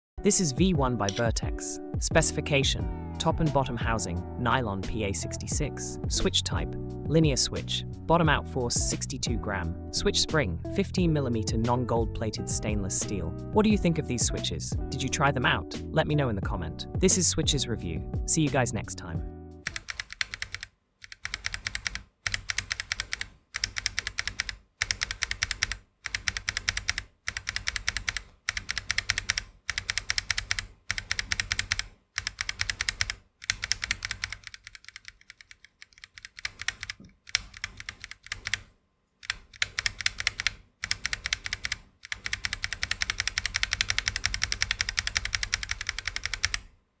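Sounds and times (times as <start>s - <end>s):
mechanical keyboard typing: 19.6s - 46.7s.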